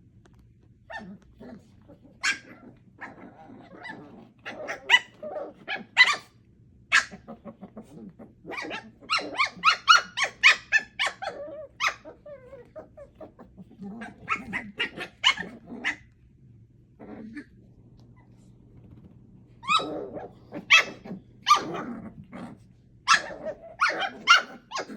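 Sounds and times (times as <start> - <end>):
puppies yapping: 8.6 - 13.4, 23.1 - 24.9.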